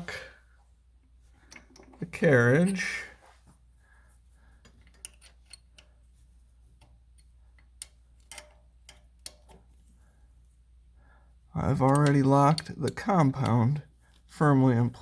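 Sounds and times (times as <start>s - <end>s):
light metallic clicks and taps: 1.4s - 2.1s, 4.6s - 6.0s, 6.8s - 9.8s, 11.7s - 14.3s.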